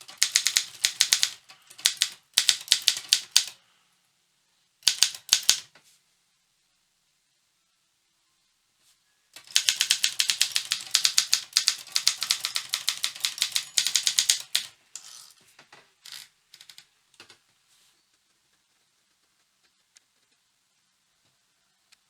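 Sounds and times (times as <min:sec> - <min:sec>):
manual typewriter typing: 0:00.0 - 0:03.6, 0:04.8 - 0:05.7, 0:09.4 - 0:15.3
typewriter mechanism rattles: 0:00.0 - 0:03.6, 0:04.8 - 0:05.7, 0:09.4 - 0:15.4.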